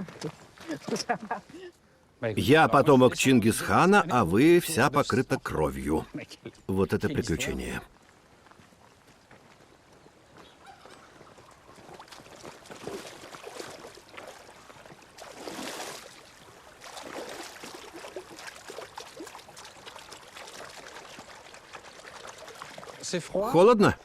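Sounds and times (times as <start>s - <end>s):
river water splashing: 11.3s - 24.0s.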